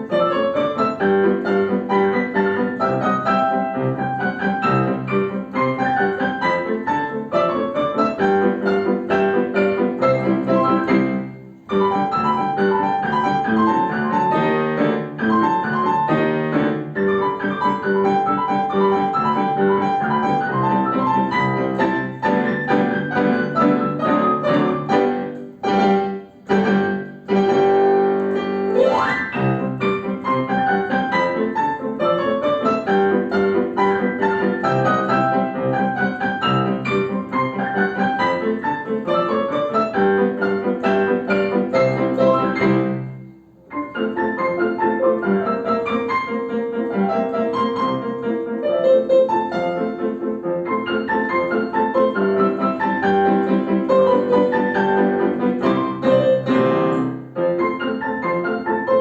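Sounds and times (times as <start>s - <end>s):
piano duet: 0.0s - 59.0s.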